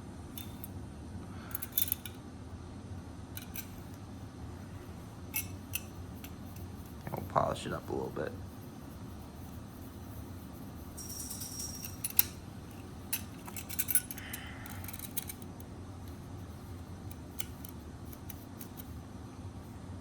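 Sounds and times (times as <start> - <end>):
small metallic clinks: 1.5 - 2.2, 11.0 - 15.5.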